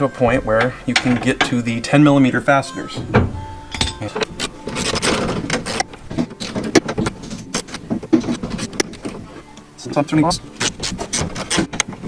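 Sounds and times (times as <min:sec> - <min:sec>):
scraping rattle: 0:00.2 - 0:09.4.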